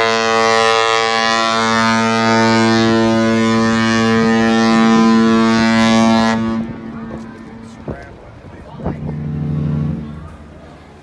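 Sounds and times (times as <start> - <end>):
deep ship horn blast: 0.0 - 11.0.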